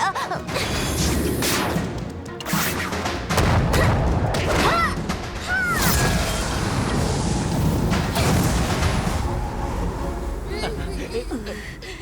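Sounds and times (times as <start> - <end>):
dramatic background music: 0.0 - 12.0
cartoon booms and impacts: 5.8 - 9.4.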